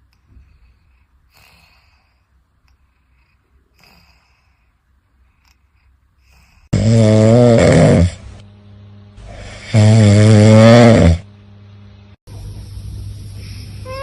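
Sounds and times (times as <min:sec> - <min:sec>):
pet snoring loudly: 0:06.7 - 0:08.3, 0:09.2 - 0:11.3.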